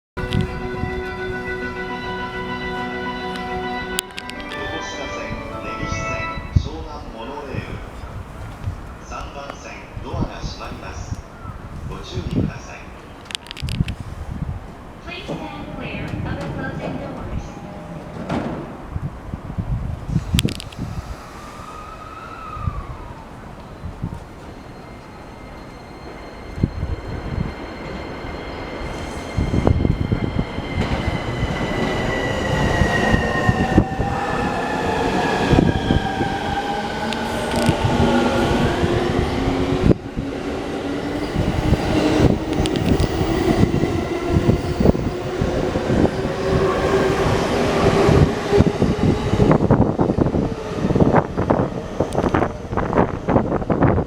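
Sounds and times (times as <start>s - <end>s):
train wheels rumbling and clicking: 14.6s - 19.2s, 28.8s - 54.0s.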